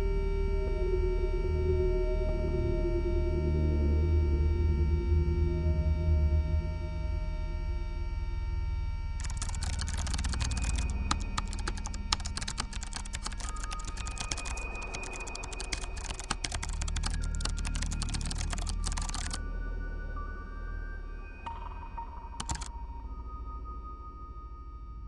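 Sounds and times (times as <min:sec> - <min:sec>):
soft ambient music: 0:00.0 - 0:25.0
computer keyboard typing: 0:09.2 - 0:19.4, 0:22.4 - 0:22.7.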